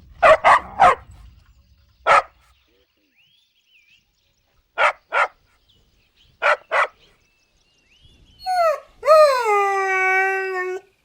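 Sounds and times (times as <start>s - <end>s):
puppy whining and howling: 8.4s - 11.0s.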